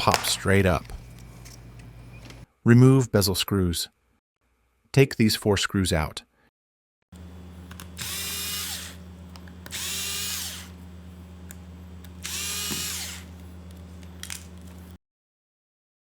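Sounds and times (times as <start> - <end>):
steady low hum: 0.0 - 2.5, 7.2 - 15.0
electric screwdriver whine: 7.7 - 10.8, 12.0 - 14.8.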